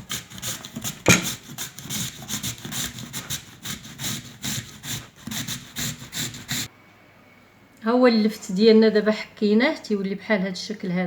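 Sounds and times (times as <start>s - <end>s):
turnip grated on a grater: 0.0s - 6.7s.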